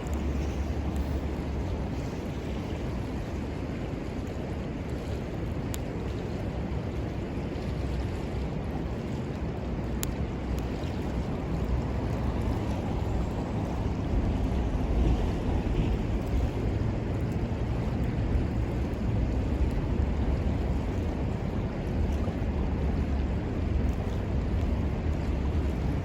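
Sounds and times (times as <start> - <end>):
campfire wood popping: 0.0 - 2.0, 9.7 - 16.4, 17.2 - 26.0
river water rushing: 0.0 - 26.0
wind rumbling on microphone: 0.0 - 26.0.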